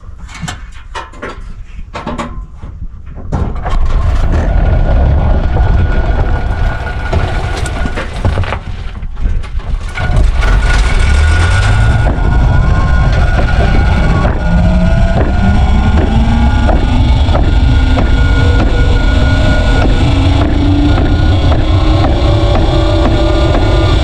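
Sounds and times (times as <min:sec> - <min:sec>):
rattling low rumble: 0:00.0 - 0:24.0
motor whine: 0:10.0 - 0:24.0
knocks: 0:13.2 - 0:18.9.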